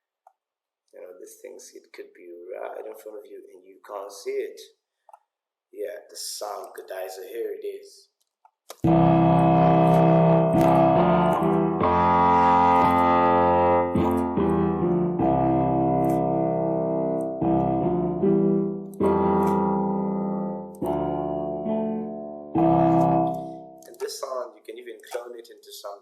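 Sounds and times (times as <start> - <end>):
electric piano chords: 8.8 - 24.1.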